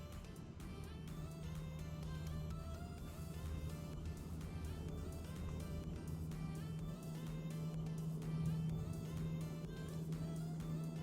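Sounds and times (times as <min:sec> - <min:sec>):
steady bass: 0:00.0 - 0:11.0.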